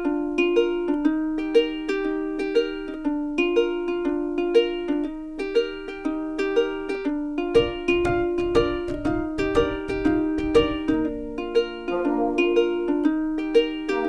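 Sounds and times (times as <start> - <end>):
plucked string melody: 0.0 - 14.0.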